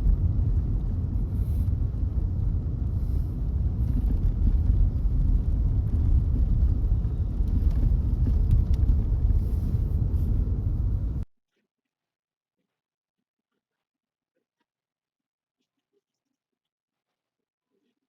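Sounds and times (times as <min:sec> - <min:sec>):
car road and engine rumble: 0:00.0 - 0:11.2.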